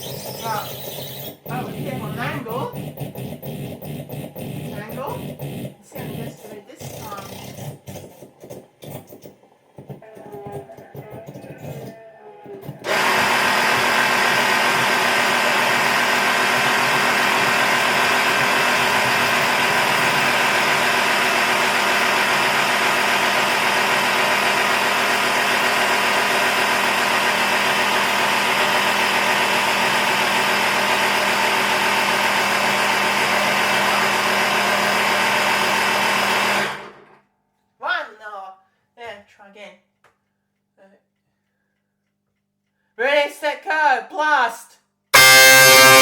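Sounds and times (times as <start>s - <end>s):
air horn blast: 45.2s - 46.0s.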